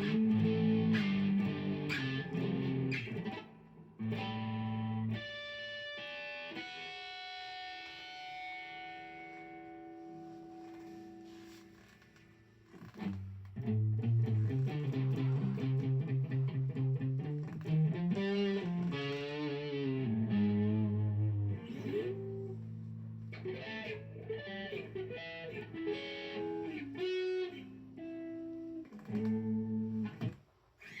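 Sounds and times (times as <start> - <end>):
electric guitar rock lead: 0.0 - 11.2, 13.0 - 31.0.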